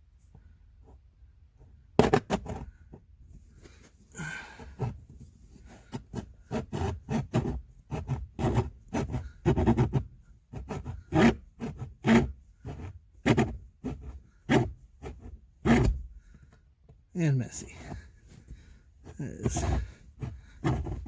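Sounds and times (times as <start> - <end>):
blade sawing hard plastic: 10.6 - 16.0, 19.1 - 21.0.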